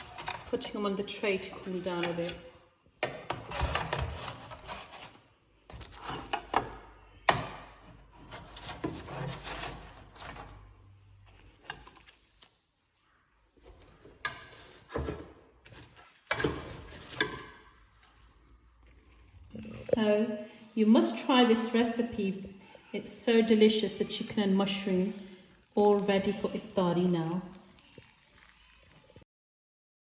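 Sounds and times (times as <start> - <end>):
scraping and rustling: 0.0 - 2.6, 3.4 - 6.8, 7.8 - 20.0.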